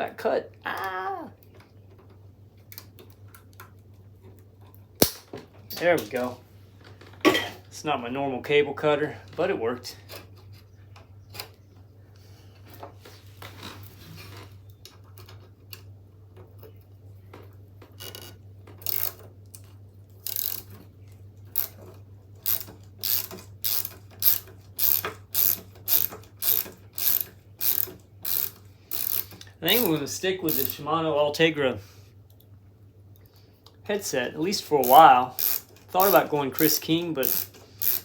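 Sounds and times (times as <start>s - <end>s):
ratchet clicks: 18.0s - 19.2s, 20.2s - 20.8s, 21.5s - 21.8s, 22.4s - 30.9s, 34.7s - 38.0s.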